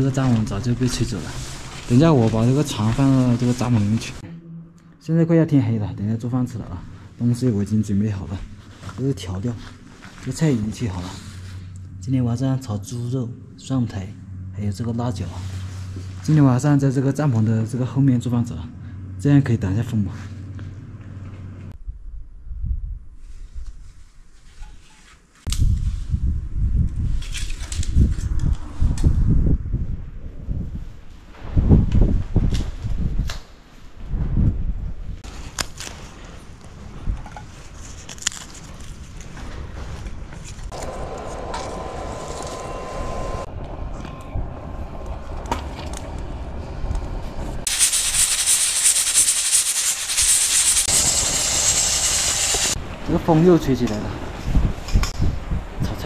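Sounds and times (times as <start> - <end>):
rustling: 0.0 - 4.2
low wind rumble: 0.0 - 24.3, 25.5 - 48.4, 50.5 - 56.0
wind buffeting microphone: 25.5 - 33.3, 33.9 - 35.3, 39.4 - 47.7, 54.0 - 56.0
food sizzling in hot oil: 47.7 - 52.8.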